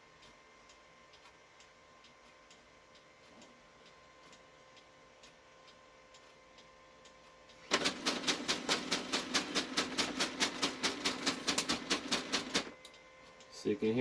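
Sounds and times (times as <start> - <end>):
printer motor hum: 7.5 - 13.2
printer knocking: 7.7 - 12.8.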